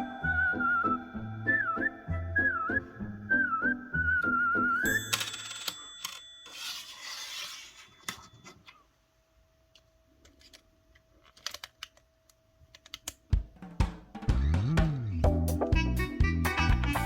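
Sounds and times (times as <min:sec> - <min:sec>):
brief scrape: 0:06.5 - 0:08.6.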